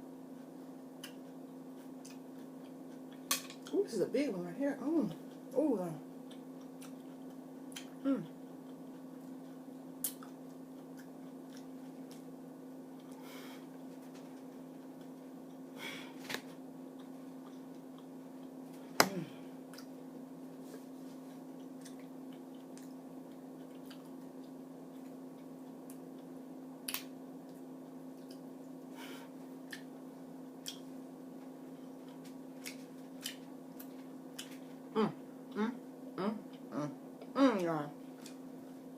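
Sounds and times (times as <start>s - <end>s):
steady low hum: 0.0s - 38.9s
person chewing: 0.3s - 3.3s, 6.2s - 12.3s, 16.9s - 18.6s, 21.2s - 28.5s, 29.6s - 30.0s, 30.6s - 30.9s, 31.8s - 34.7s.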